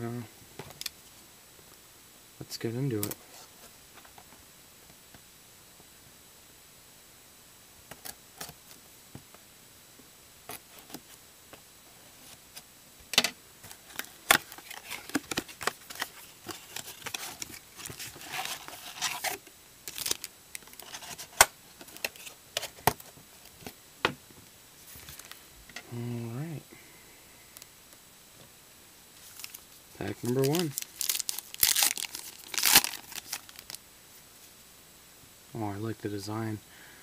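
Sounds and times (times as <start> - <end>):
cardboard and plastic tearing: 13.7 - 23.0, 30.2 - 33.8.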